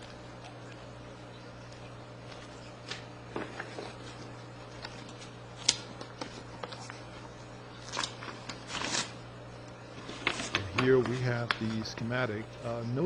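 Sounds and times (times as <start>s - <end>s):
steady low hum: 0.0s - 13.0s
paper pages rustling: 2.3s - 9.2s, 9.9s - 12.4s.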